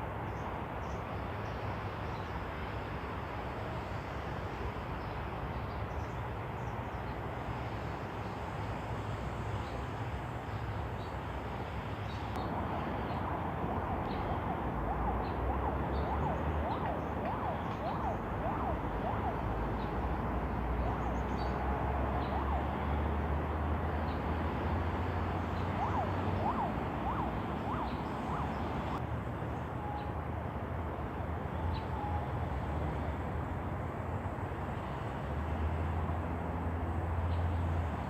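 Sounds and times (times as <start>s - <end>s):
emergency vehicle siren: 13.9s - 23.4s, 25.5s - 29.0s.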